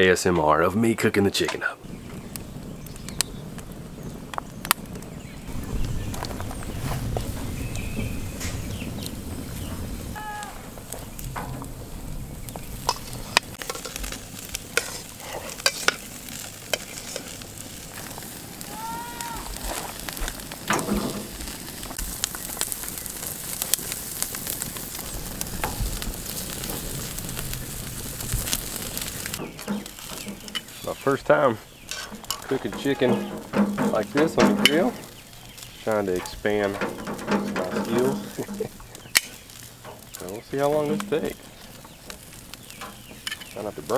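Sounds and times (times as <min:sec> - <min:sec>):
fire popping and crackling: 0:01.8 - 0:43.9
meat sizzling on a grill: 0:01.8 - 0:43.9.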